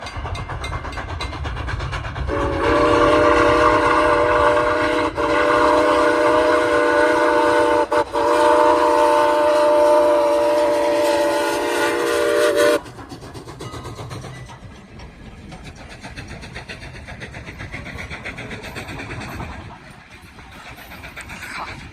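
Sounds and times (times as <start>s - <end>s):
steam locomotive whistle: 2.3s - 12.8s.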